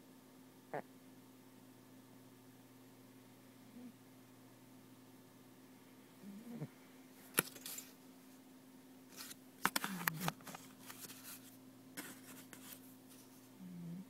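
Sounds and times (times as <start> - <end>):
cat snoring: 6.2 - 6.7, 13.6 - 14.0.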